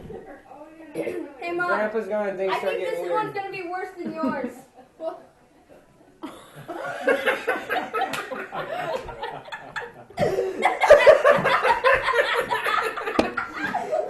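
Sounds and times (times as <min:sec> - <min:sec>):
people laughing: 0:06.2 - 0:14.0.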